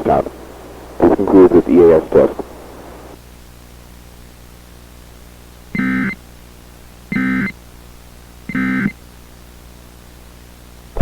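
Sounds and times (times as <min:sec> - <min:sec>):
digital data tone bursts: 0:05.8 - 0:06.2, 0:07.1 - 0:07.5, 0:08.5 - 0:08.9.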